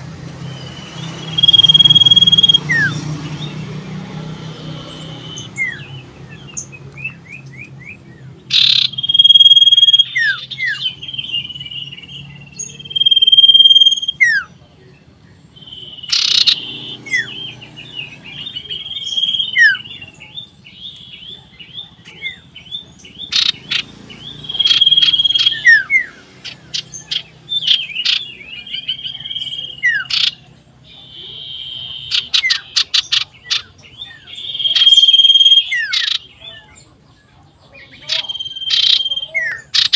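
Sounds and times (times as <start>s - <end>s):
bird singing whistles and trills: 0.4s - 3.6s, 5.0s - 14.5s, 15.6s - 26.2s, 30.8s - 36.7s, 38.0s - 39.9s.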